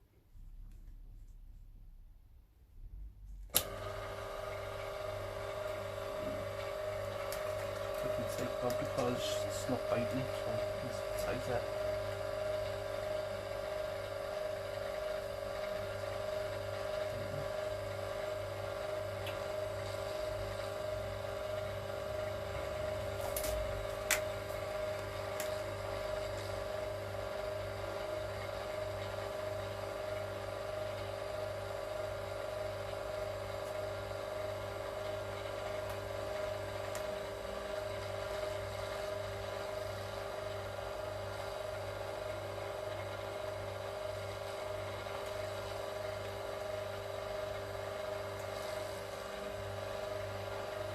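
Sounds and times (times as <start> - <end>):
machine motor humming: 3.5 - 28.4.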